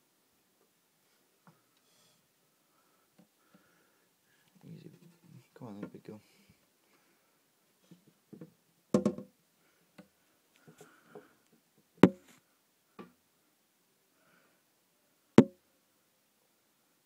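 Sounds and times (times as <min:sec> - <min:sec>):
loud sharp knocks: 0:12.0 - 0:12.2.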